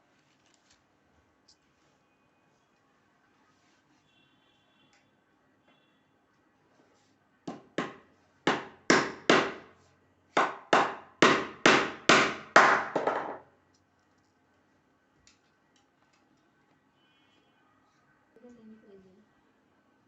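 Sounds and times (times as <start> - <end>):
hammer striking wood: 7.5 - 9.7, 10.4 - 13.4.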